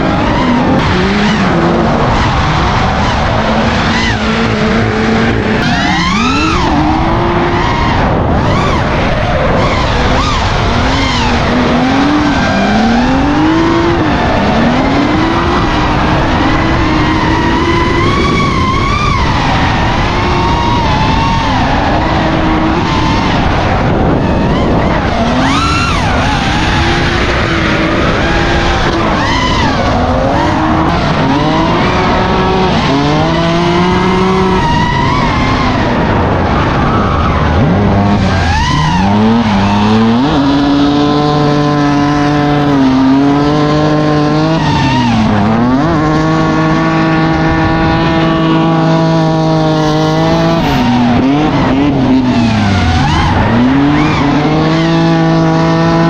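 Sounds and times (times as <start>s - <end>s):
car engine revving high: 0.0s - 56.0s.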